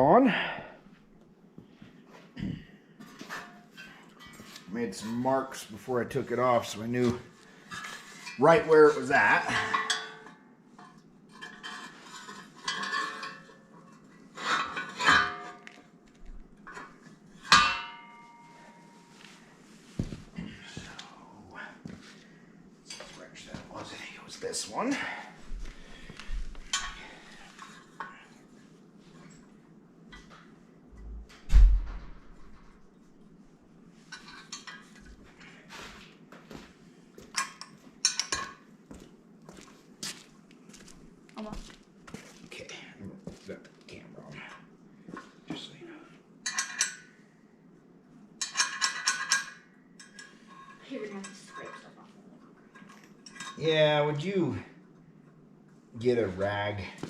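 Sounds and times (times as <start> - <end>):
metal tools clinking and clanking: 7.0 - 15.9, 26.6 - 28.3, 37.3 - 38.6, 46.4 - 47.2, 48.4 - 52.0, 52.6 - 53.7.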